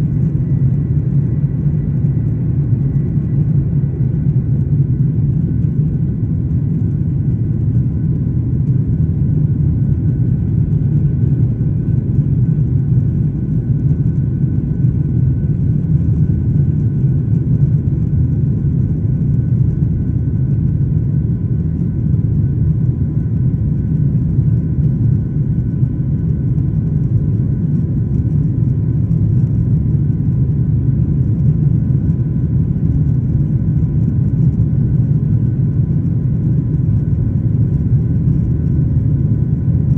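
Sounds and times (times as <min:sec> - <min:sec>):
faint jet engine whine: 0:00.0 - 0:39.9.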